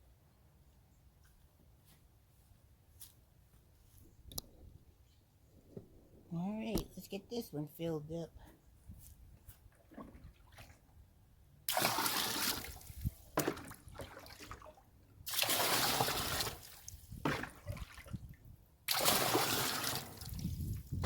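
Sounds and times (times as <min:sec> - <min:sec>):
water dribbling: 0:09.7 - 0:10.9, 0:11.7 - 0:21.0
water pouring into trash can: 0:11.7 - 0:18.2, 0:18.9 - 0:21.0.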